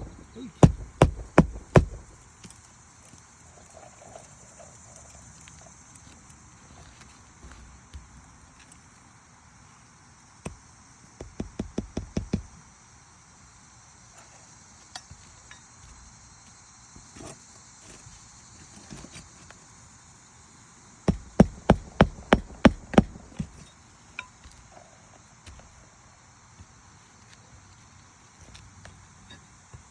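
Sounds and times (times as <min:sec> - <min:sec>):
hammer driving nails: 0:00.0 - 0:02.6, 0:21.1 - 0:23.6.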